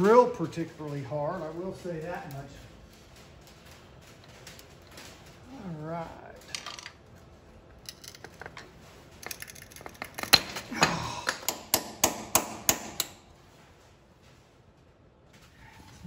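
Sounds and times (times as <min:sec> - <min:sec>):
tools clicking on metal: 0:07.7 - 0:13.2
sharp knocks: 0:10.3 - 0:13.2.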